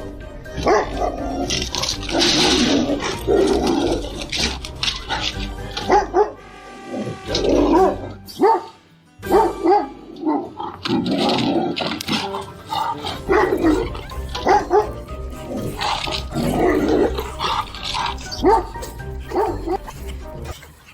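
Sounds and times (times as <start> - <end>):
background music: 0.0 - 20.9
dogs barking: 0.0 - 20.9.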